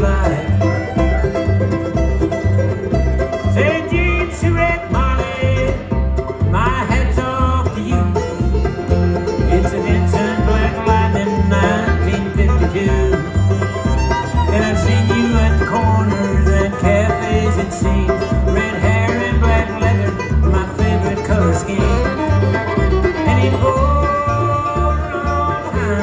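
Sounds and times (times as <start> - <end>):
banjo picking: 0.0 - 26.0
bass beat: 0.0 - 26.0
bowed fiddle: 0.0 - 26.0
guitar: 0.0 - 26.0.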